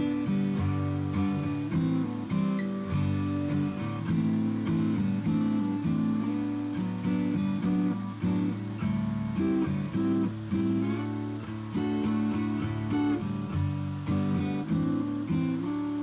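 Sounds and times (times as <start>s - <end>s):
strummed acoustic guitar: 0.0s - 16.0s.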